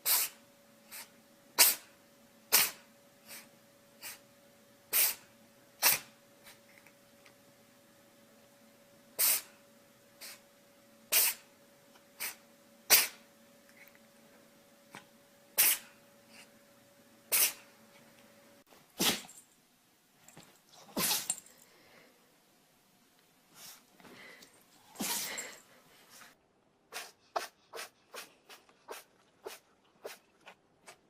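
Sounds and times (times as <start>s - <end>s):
pets sneezing: 0.0s - 1.9s, 2.5s - 4.2s, 4.9s - 6.6s, 9.2s - 9.5s, 11.1s - 11.5s, 12.2s - 13.2s, 15.6s - 16.0s, 17.3s - 17.7s, 19.0s - 19.4s, 20.7s - 21.5s, 23.6s - 26.3s, 26.9s - 31.0s.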